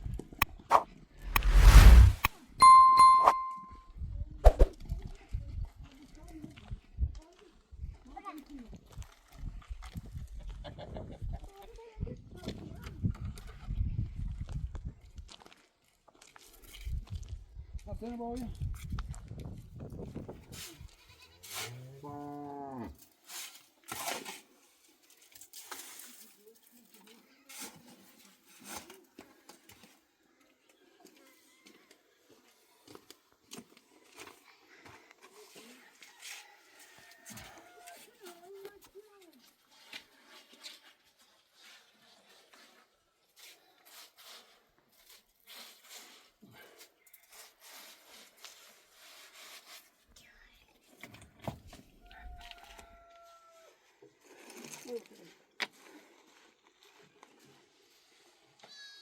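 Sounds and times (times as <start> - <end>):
faint scraping strokes: 0.7 - 2.3.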